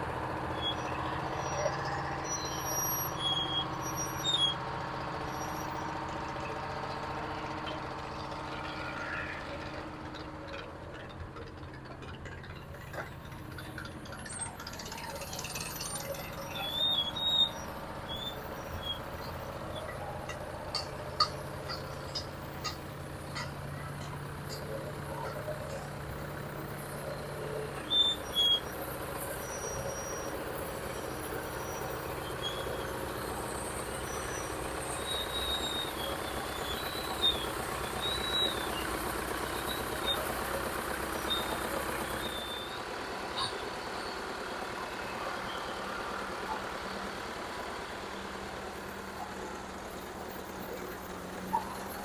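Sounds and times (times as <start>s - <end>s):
heavy machinery engine running: 0.0s - 52.0s.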